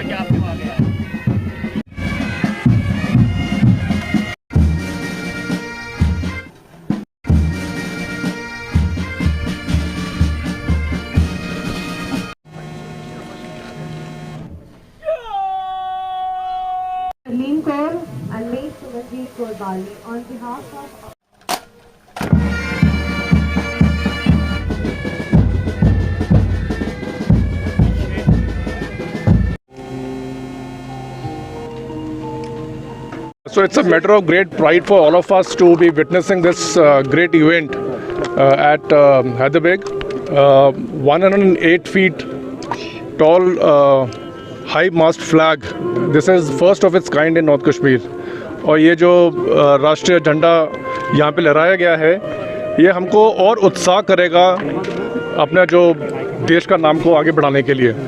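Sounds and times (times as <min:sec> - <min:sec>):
bagpipes playing: 0:00.0 - 0:06.5, 0:07.3 - 0:14.4, 0:22.3 - 0:40.6, 0:42.1 - 0:57.4
bass drum beating: 0:00.1 - 0:05.0, 0:22.3 - 0:29.6.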